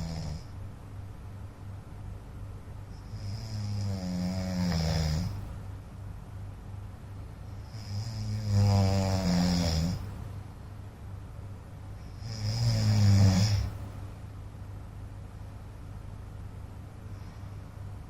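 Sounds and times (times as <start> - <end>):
man snoring: 0.0 - 0.5, 3.0 - 5.5, 7.6 - 10.1, 12.1 - 13.8.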